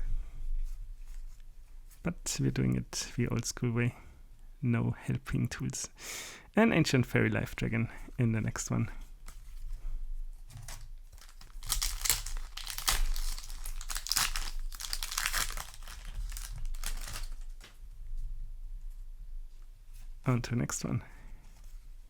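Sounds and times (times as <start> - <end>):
foil wrapper crinkling and tearing: 10.5 - 17.8.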